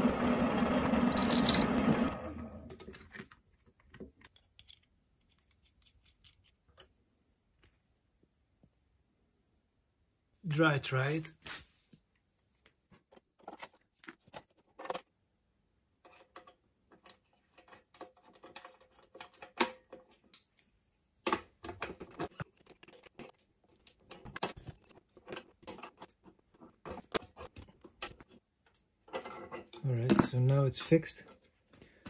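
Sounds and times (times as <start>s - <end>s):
metal fittings clicking and clinking: 4.2s - 7.0s.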